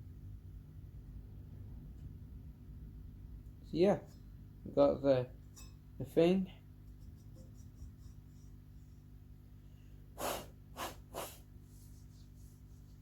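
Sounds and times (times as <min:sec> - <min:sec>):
low steady hum: 0:00.0 - 0:13.0
person breathing out sharply: 0:10.2 - 0:11.5.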